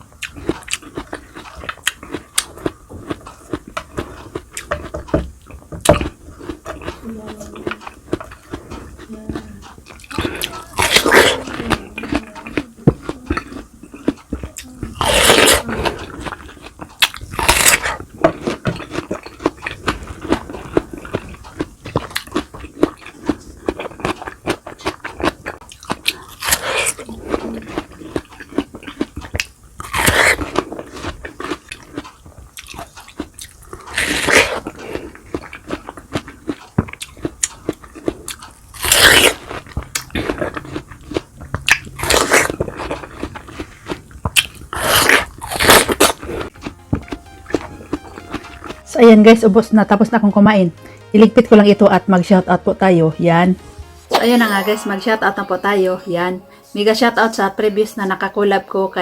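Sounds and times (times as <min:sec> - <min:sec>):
person chewing food: 0:00.0 - 0:49.5, 0:50.8 - 0:51.1
crunchy bites: 0:05.8 - 0:48.8.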